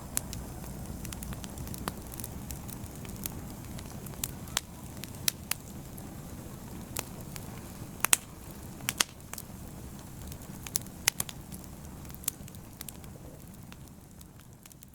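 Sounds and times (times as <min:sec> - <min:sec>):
fire crackling: 0:00.0 - 0:14.9.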